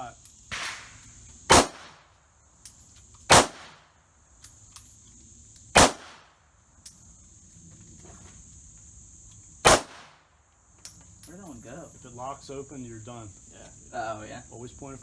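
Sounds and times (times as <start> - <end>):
high insect buzz: 0.0 - 15.0
gunshots: 0.5 - 2.1, 3.3 - 3.9, 5.7 - 6.3, 9.6 - 10.2.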